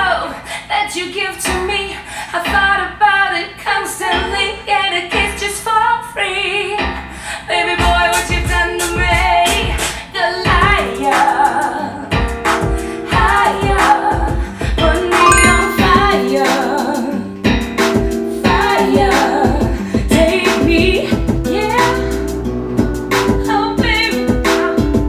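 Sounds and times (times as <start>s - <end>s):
pop song with female singer: 0.0s - 25.0s
bass and drum beat: 7.8s - 9.9s, 10.5s - 11.3s, 12.1s - 25.0s.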